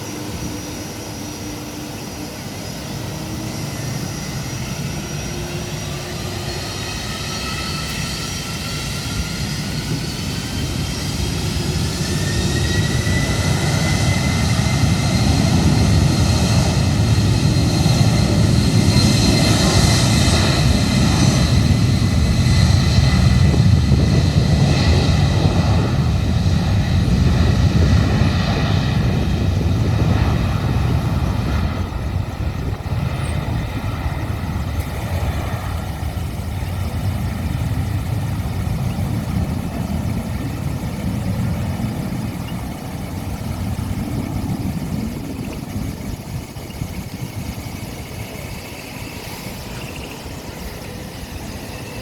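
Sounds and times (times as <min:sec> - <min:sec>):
jet engine whine: 0:00.0 - 0:52.0
jet engines rumbling: 0:00.0 - 0:52.0.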